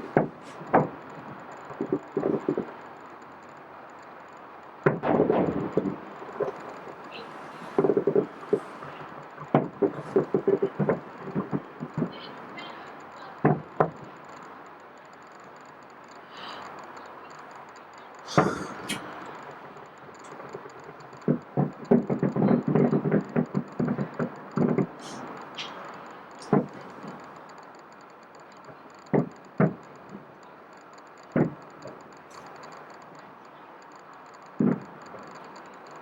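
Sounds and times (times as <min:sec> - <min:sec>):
fireworks booms and bangs: 0:00.0 - 0:02.9, 0:04.8 - 0:14.4, 0:18.3 - 0:27.4, 0:28.7 - 0:30.3, 0:31.3 - 0:32.6, 0:34.6 - 0:35.5.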